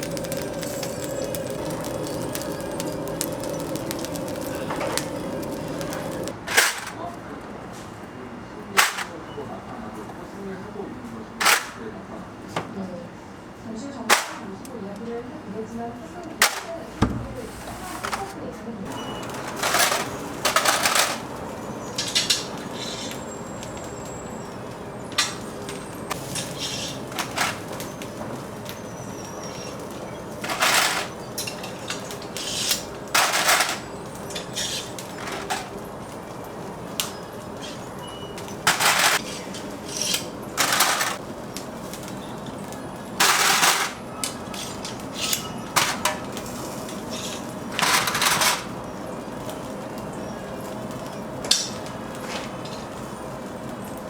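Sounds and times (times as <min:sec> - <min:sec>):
steady low hum: 0:00.0 - 0:06.4
knocks and scrapes of food-stall work: 0:00.0 - 0:07.9, 0:16.4 - 0:23.9, 0:25.1 - 0:48.8, 0:50.6 - 0:53.2.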